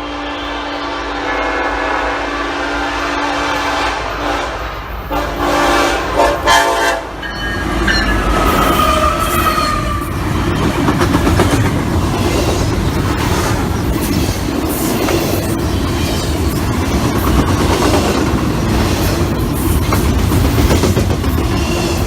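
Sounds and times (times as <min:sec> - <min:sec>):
train horn: 0:00.0 - 0:10.2
train rumbling past: 0:00.0 - 0:22.0
wheels clacking over rails: 0:07.2 - 0:22.0.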